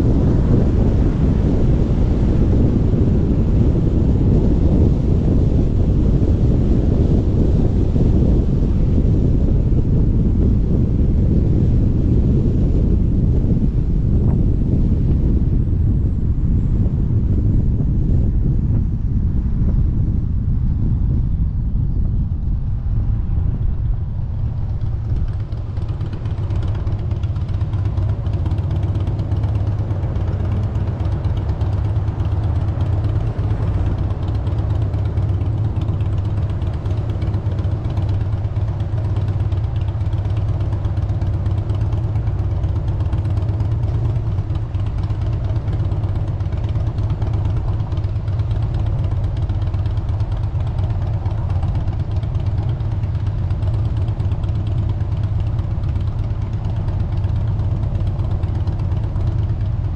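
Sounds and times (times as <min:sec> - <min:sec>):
car engine and road rumble: 0:00.0 - 0:59.9.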